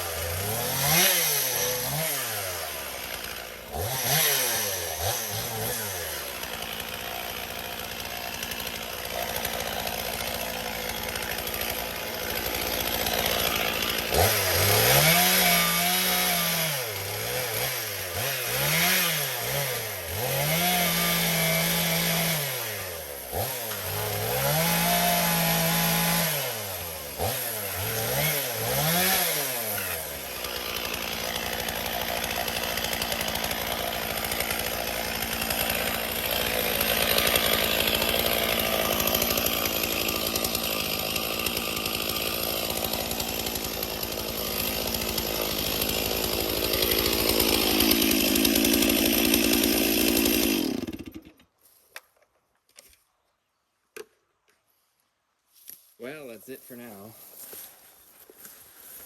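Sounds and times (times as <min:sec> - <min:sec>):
chainsaw revving: 0:00.0 - 0:51.4.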